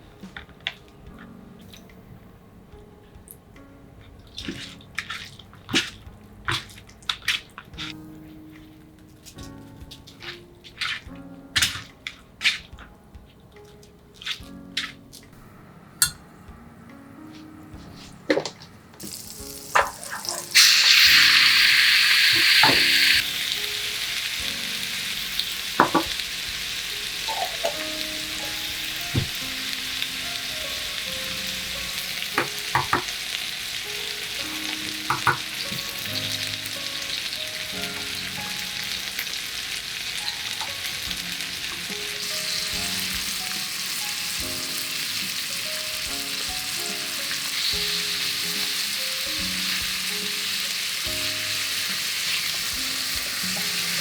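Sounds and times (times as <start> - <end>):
food sizzling in frying pan: 19.0 - 54.0
utensil tapping pan: 22.4 - 39.5, 51.1 - 54.0.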